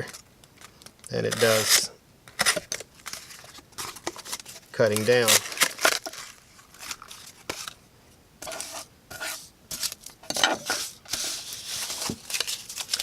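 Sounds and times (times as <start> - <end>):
knife scraping: 1.2 - 3.2, 8.4 - 12.1.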